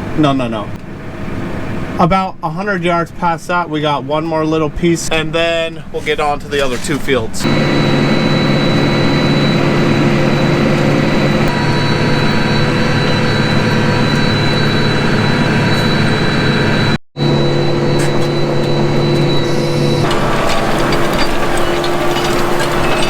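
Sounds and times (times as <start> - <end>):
high whine: 7.4 - 23.0
tractor diesel engine running: 7.4 - 23.0.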